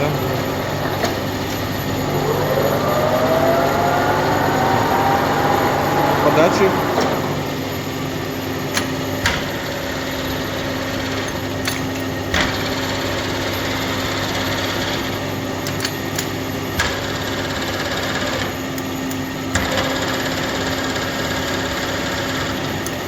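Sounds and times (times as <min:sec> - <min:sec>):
lathe machine hum: 0:00.0 - 0:11.6.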